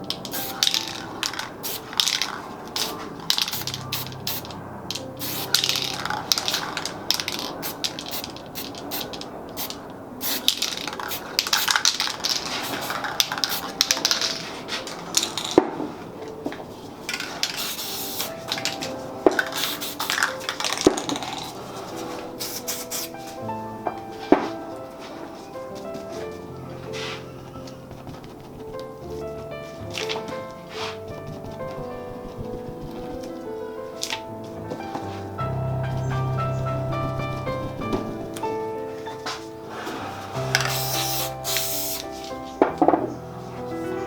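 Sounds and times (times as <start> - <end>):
spray paint cans hissing: 0.0 - 15.6, 17.1 - 23.4, 26.9 - 33.3, 36.0 - 38.6, 39.7 - 42.4
clatter of cans and tools: 10.4 - 15.8, 17.1 - 21.6.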